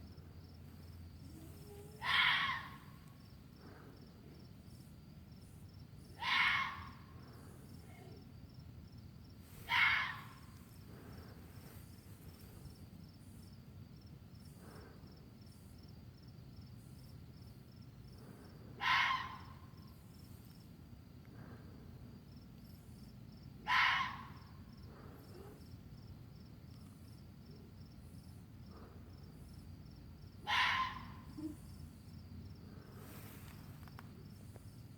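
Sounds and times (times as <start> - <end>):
low background hiss: 0.0 - 18.8
animal harsh call: 2.0 - 3.0, 6.2 - 7.0, 9.6 - 10.4.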